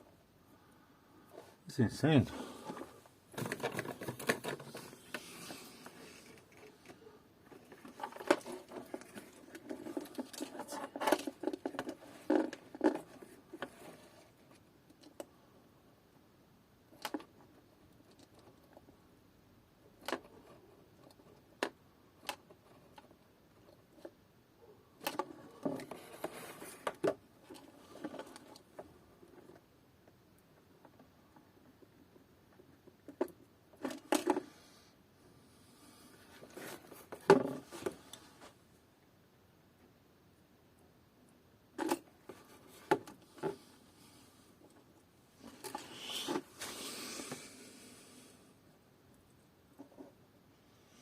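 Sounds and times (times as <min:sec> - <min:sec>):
rustling: 0:00.5 - 0:14.6, 0:24.0 - 0:29.6, 0:35.7 - 0:38.8, 0:41.8 - 0:48.4.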